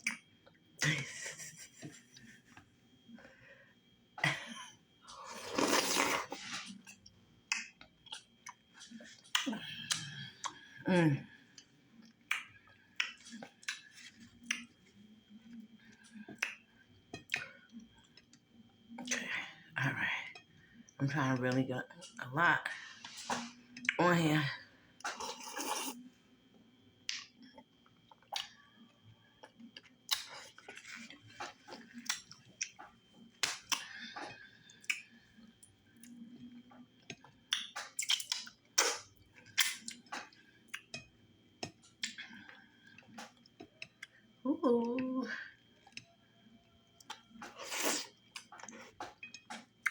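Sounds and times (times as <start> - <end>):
wet chewing and lip smacking: 0.0 - 0.9, 5.6 - 10.7, 11.6 - 19.2, 27.0 - 45.0, 45.7 - 49.9
wet mouth smacks eating: 12.3 - 14.7, 27.1 - 27.4, 28.1 - 28.6, 29.4 - 35.1, 37.2 - 40.9, 41.6 - 42.3, 47.0 - 49.9.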